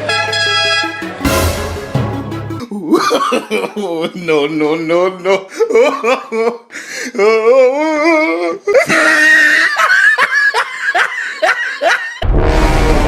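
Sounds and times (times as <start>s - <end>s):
music with heavy bass: 0.0s - 2.6s, 12.2s - 13.0s
person laughing: 2.5s - 4.3s, 5.3s - 6.6s, 7.2s - 12.2s.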